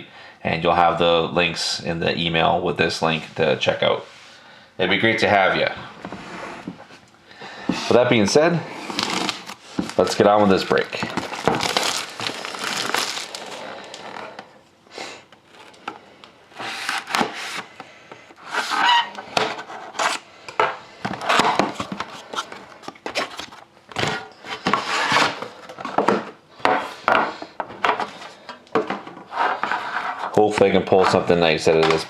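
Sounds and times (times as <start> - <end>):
packaging scraping and rustling: 8.7 - 14.5, 16.5 - 17.8, 18.4 - 20.3, 21.2 - 26.0.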